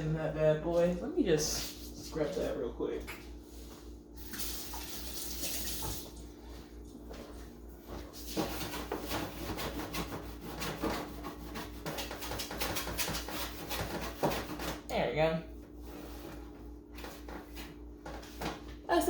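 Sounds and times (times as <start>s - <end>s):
scrubbing refrigerator shelf: 3.4s - 14.9s, 15.7s - 18.8s.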